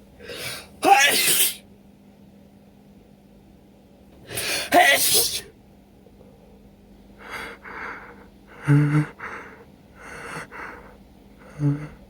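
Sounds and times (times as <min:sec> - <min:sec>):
person gasping before sneeze: 0:00.2 - 0:01.6, 0:04.3 - 0:05.4.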